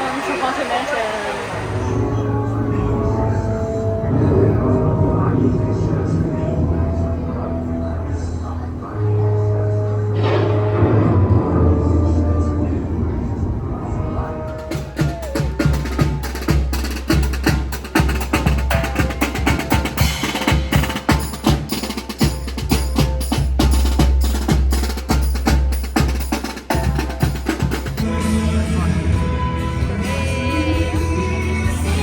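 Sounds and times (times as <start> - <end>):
percussive music with bass: 14.3 - 32.0.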